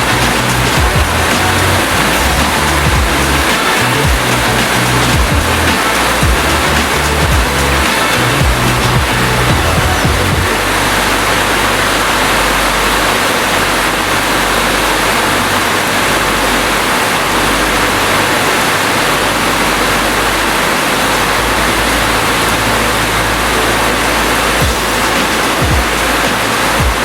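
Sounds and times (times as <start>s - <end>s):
steady rain hiss: 0.0s - 27.0s.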